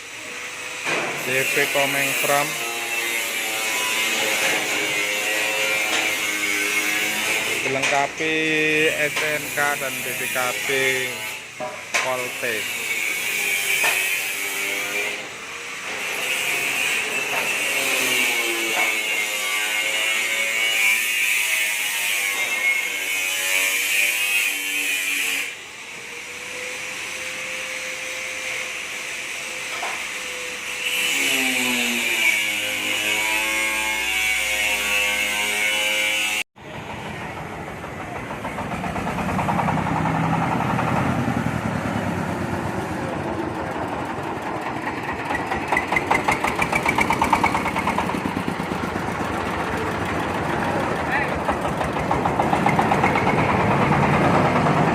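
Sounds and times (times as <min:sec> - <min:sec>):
corn sheller engine running: 0:36.6 - 0:54.9.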